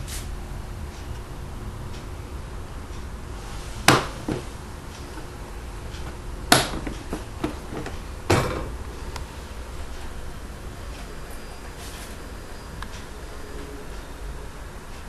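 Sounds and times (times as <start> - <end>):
kitchen items clacking: 3.7 - 8.9.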